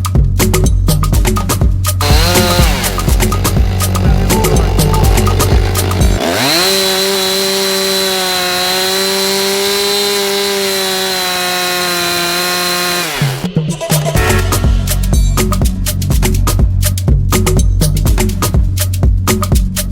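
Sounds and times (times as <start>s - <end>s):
upbeat backing music: 0.0s - 6.2s, 13.5s - 19.9s
chainsaw engine revving: 2.0s - 13.5s.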